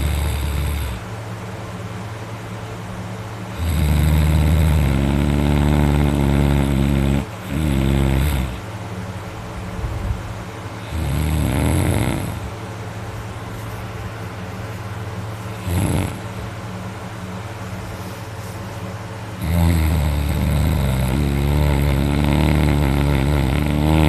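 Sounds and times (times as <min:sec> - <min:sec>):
man snoring loudly: 0:00.0 - 0:01.1, 0:03.5 - 0:08.6, 0:10.8 - 0:12.5, 0:15.6 - 0:16.3, 0:19.4 - 0:24.0
steady low hum: 0:00.0 - 0:24.0.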